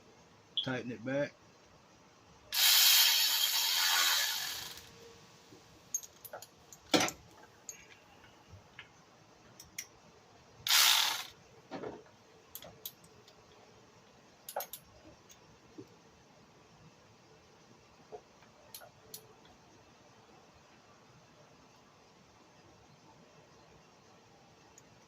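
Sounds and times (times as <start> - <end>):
ratchet wrench clicking: 2.6 - 4.9, 10.7 - 11.3, 14.5 - 14.8
small metal clicks: 5.9 - 8.0, 12.5 - 13.5, 14.5 - 15.4.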